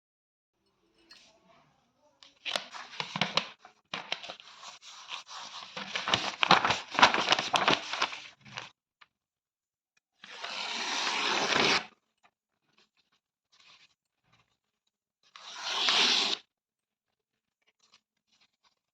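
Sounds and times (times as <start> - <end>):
paper tearing: 2.5 - 8.7, 10.2 - 11.9, 15.3 - 16.4.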